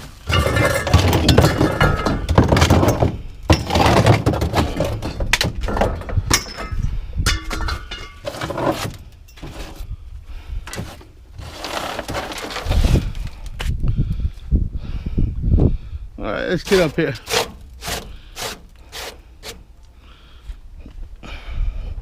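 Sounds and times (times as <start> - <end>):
scrap metal crashing onto pile: 0.1 - 6.8.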